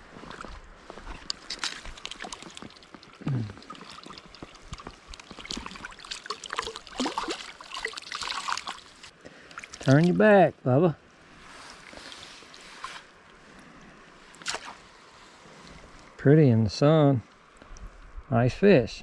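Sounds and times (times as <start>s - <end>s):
creek water trickling: 0.0s - 16.2s, 16.9s - 18.2s
small splashes and knocks: 0.3s - 10.2s, 14.3s - 14.8s.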